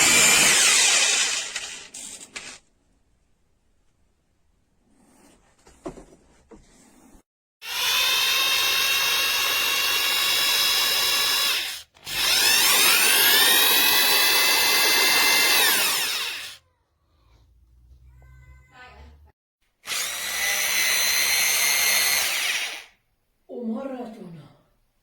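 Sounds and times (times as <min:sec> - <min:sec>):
rotary hammer running: 0:00.0 - 0:02.6, 0:07.6 - 0:16.6.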